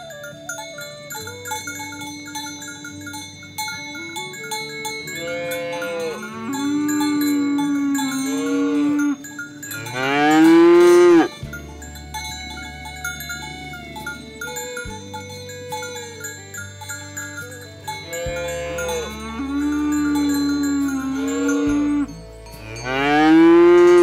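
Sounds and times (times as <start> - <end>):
light music with glockenspiel notes: 0.0 - 24.0
cattle mooing: 4.8 - 11.9, 17.2 - 24.0.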